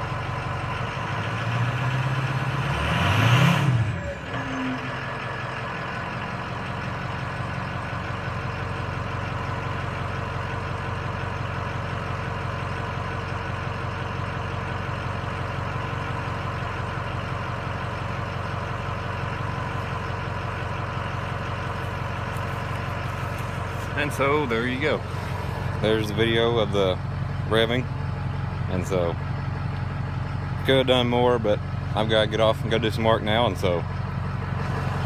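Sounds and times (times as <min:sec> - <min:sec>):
diesel engine revving and idling: 0:00.0 - 0:35.0.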